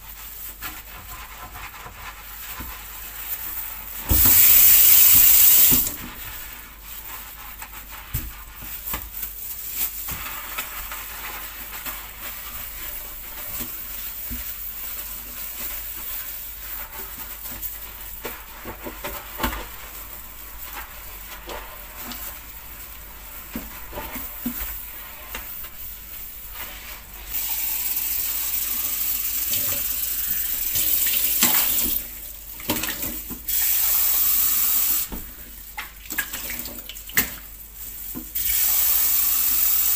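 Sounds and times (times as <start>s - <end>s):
water running from tap: 4.0s - 6.0s, 27.3s - 35.1s, 38.2s - 39.9s.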